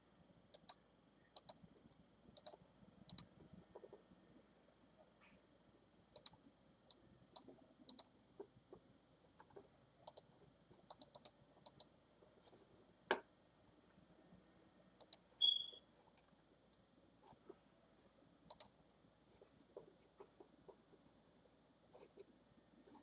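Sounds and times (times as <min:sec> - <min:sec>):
mouse buttons clicking: 0:01.4 - 0:01.6, 0:02.4 - 0:03.3, 0:06.2 - 0:08.1, 0:10.1 - 0:10.3, 0:10.9 - 0:11.9, 0:15.0 - 0:15.8, 0:18.5 - 0:18.7
smoke alarm chirp: 0:15.4 - 0:15.9.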